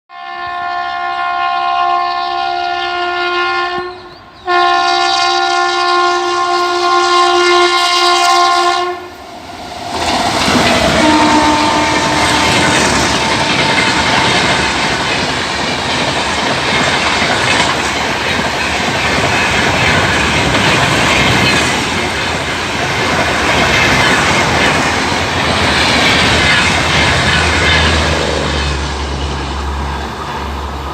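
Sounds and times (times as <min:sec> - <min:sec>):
train horn blasts: 0:00.1 - 0:09.2, 0:10.8 - 0:14.8
train wheels rumbling on rails: 0:06.4 - 0:30.9.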